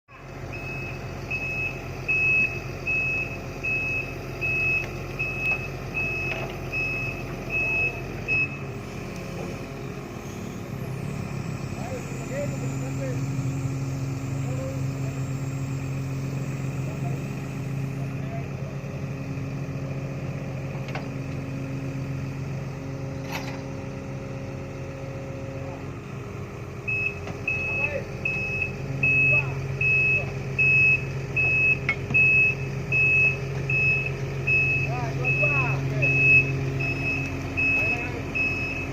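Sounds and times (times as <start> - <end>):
diesel engine running: 0.0 - 38.9
reversing alarm beeping: 0.4 - 8.8, 26.8 - 38.9.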